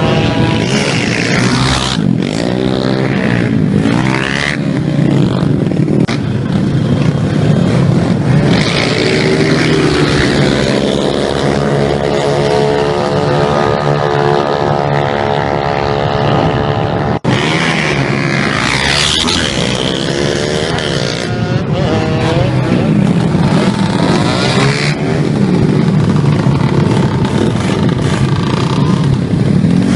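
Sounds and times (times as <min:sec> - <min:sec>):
motorcycle engines revving: 0:00.0 - 0:29.9.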